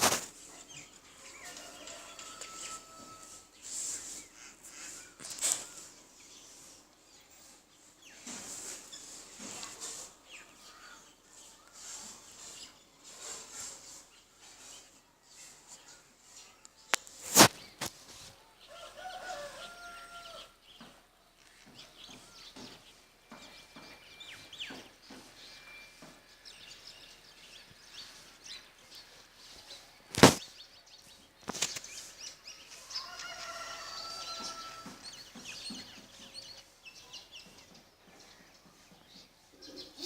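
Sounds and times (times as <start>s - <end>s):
birds chirping and whistling: 20.7s - 40.0s.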